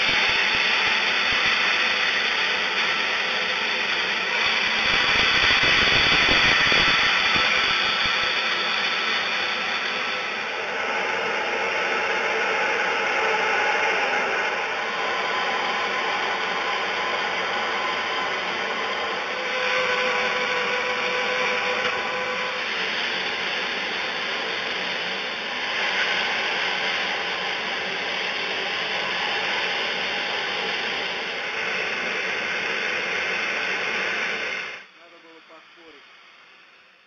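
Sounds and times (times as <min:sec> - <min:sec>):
plasma torch hissing: 0:00.0 - 0:10.3.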